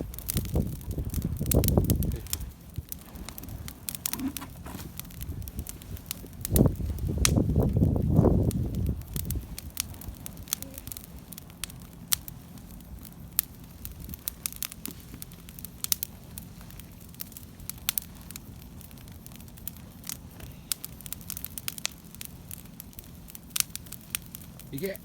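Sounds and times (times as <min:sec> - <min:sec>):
bonfire crackling and popping: 0:00.0 - 0:25.0
low background rush: 0:00.0 - 0:25.0.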